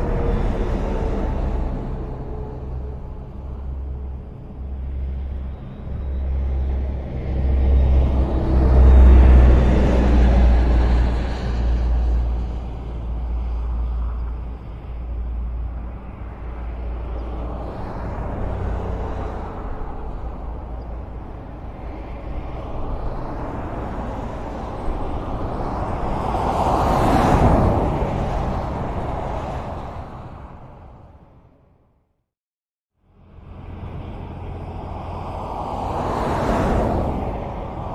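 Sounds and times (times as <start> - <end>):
low engine rumble: 0.0 - 26.3.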